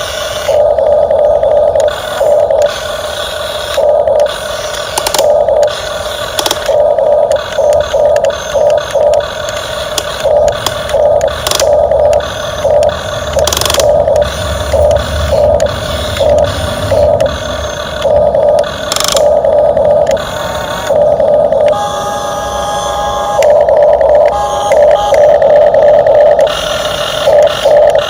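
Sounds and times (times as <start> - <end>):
small electric motors whirring: 0.0 - 28.0
clicks: 0.5 - 2.8, 3.7 - 21.8.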